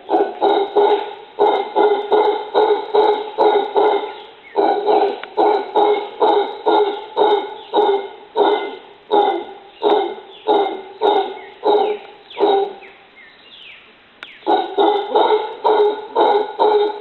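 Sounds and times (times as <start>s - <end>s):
dog barking: 0.0s - 12.8s, 14.5s - 17.0s.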